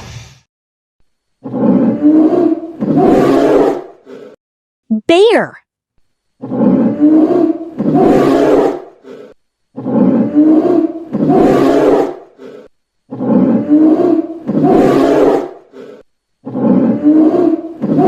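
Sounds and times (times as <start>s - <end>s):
bear roaring: 1.4s - 4.3s, 6.4s - 18.0s.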